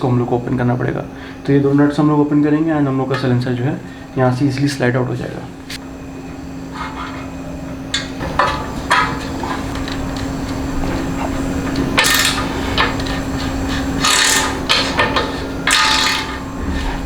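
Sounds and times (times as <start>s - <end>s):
steady low hum: 0.0s - 17.0s
tool scraping metal: 6.6s - 10.2s, 10.8s - 17.0s.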